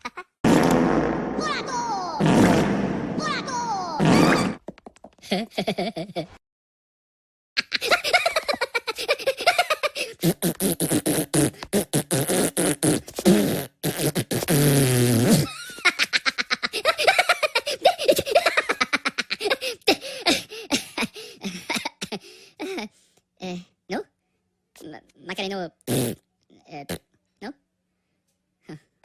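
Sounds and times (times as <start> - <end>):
long low falling sound: 0.7 - 4.0
cartoon voices babbling gibberish: 1.4 - 2.6, 3.2 - 4.6.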